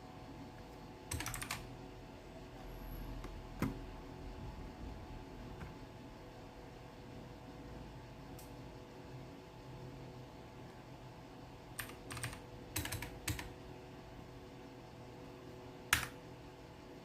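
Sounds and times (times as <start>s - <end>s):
mechanical keyboard clicks: 1.1s - 1.6s, 11.8s - 13.5s, 15.9s - 16.2s.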